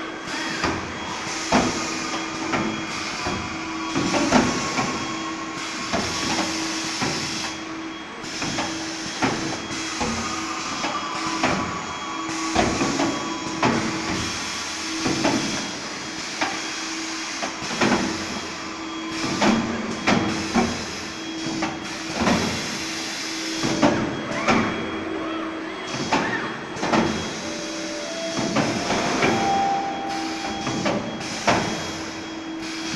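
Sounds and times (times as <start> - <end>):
welding machinery clanking: 26.8 - 32.9.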